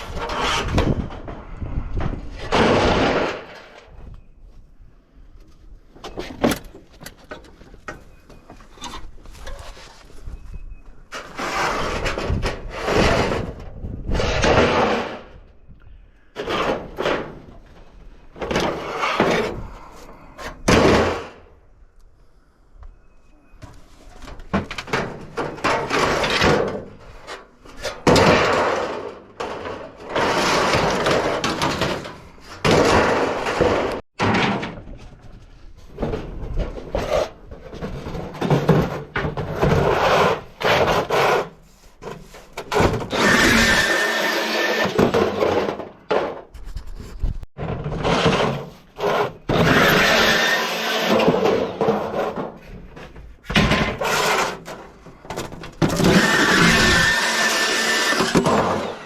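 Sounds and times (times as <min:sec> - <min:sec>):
reciprocating saw cutting metal: 0:43.1 - 0:45.0, 0:49.2 - 0:51.4, 0:56.0 - 0:59.0.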